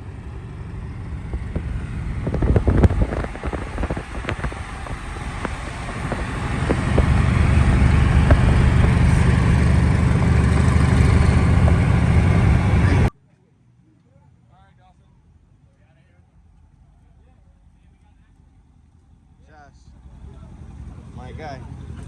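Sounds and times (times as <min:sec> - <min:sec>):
car engine deep rumble: 0:00.0 - 0:13.1
exhaust crackling and popping: 0:00.0 - 0:13.1.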